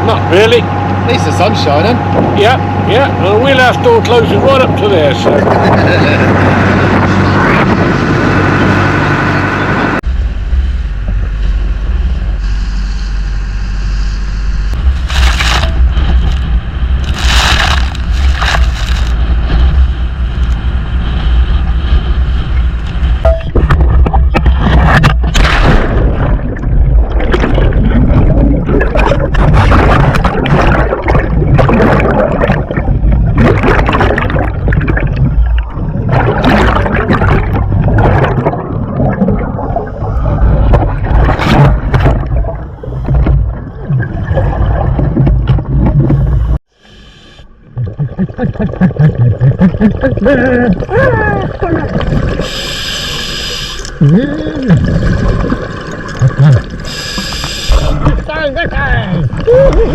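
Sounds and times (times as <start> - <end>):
boat crossing choppy water: 0.0 - 46.8
boat engine running: 0.0 - 46.8
wind buffeting microphone: 1.8 - 10.0
water gurgling: 23.2 - 46.6, 47.6 - 59.9.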